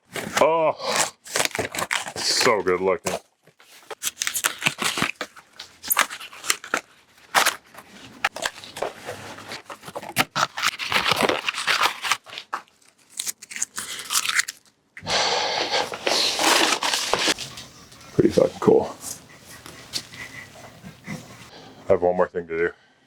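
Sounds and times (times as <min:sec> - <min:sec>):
packaging crinkling and tearing: 0:00.0 - 0:14.8, 0:15.6 - 0:17.6.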